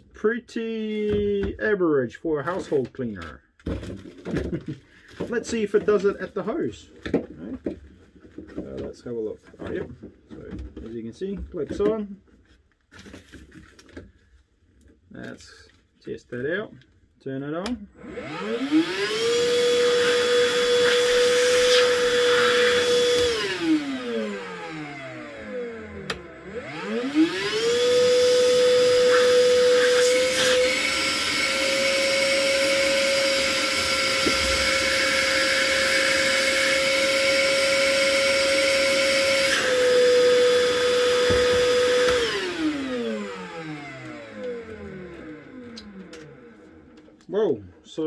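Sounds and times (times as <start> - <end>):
vacuum motor whining: 18.0 - 47.1.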